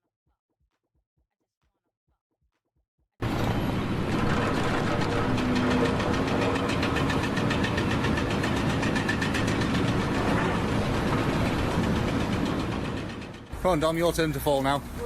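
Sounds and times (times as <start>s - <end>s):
engine running steadily: 3.2s - 15.0s
rapid even ticking: 4.4s - 14.4s.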